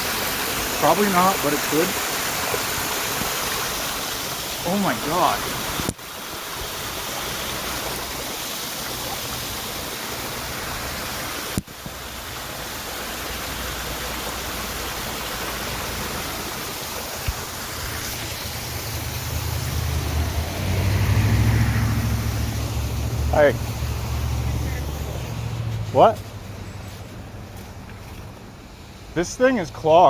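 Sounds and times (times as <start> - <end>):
water rushing: 0.0 - 30.0
vehicle engine hum: 8.8 - 29.2.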